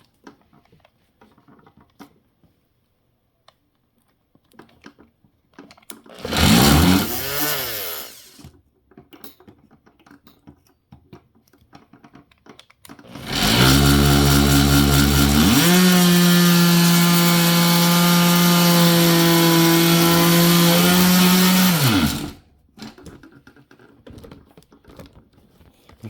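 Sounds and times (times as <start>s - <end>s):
oscillating multi-tool buzzing: 6.1s - 8.5s, 13.1s - 22.4s.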